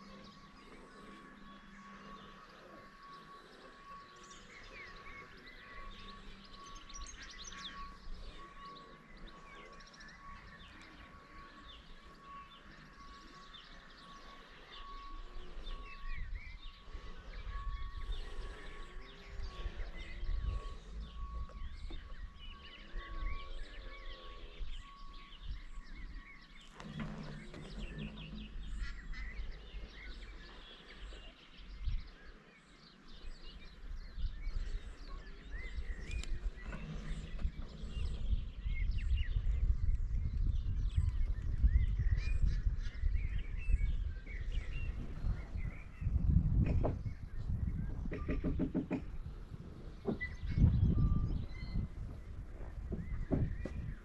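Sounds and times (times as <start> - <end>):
pulsing high tone: 0.0 - 32.4, 49.5 - 54.0
small birds chirping: 0.0 - 54.0
wind on microphone: 14.8 - 30.4, 33.4 - 54.0.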